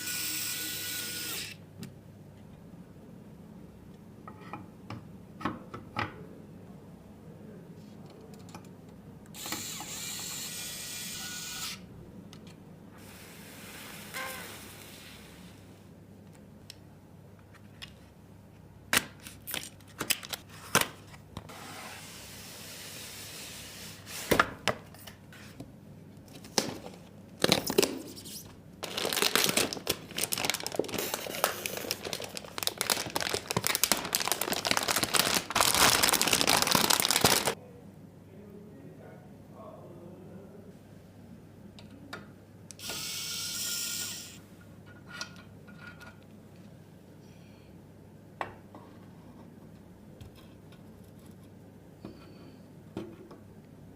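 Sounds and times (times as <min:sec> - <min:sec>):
power screwdriver running: 0:00.0 - 0:01.6, 0:09.4 - 0:11.8.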